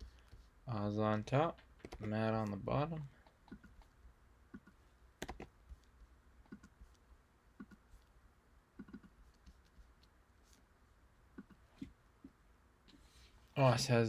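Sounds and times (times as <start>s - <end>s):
keyboard and mouse clicks: 1.5s - 2.6s, 3.2s - 6.8s, 7.6s - 8.1s, 8.8s - 10.2s, 11.3s - 11.9s.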